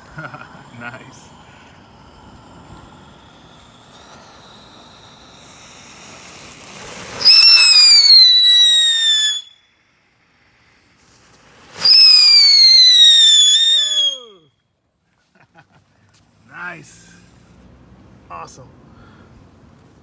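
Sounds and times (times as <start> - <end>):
firework hiss: 0.0 - 14.5, 16.4 - 17.7
firework whistles falling in pitch: 0.0 - 14.5.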